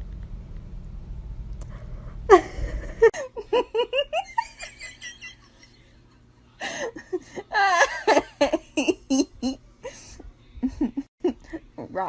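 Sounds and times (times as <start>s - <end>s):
person laughing: 2.3s - 5.7s, 6.6s - 11.7s.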